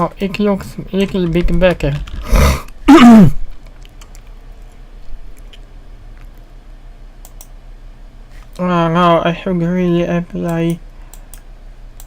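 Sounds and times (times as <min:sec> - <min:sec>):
man exhaling: 0:02.2 - 0:03.4
man humming: 0:02.3 - 0:03.4
computer key clicks: 0:07.2 - 0:07.5.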